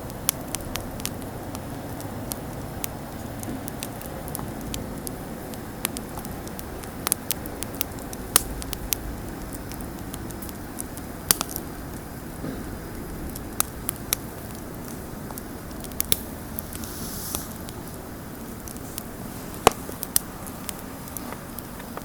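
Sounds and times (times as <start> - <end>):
campfire pops and crackles: 0.0 - 22.0
low rushing fire sound: 0.0 - 22.0
soft hiss: 8.1 - 22.0.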